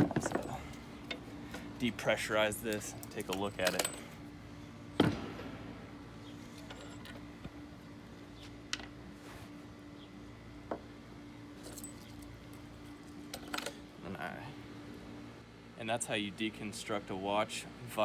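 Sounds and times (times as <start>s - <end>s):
small metal parts clinking: 0.0s - 4.2s, 6.5s - 7.3s, 11.6s - 13.8s
low hum: 0.0s - 9.2s.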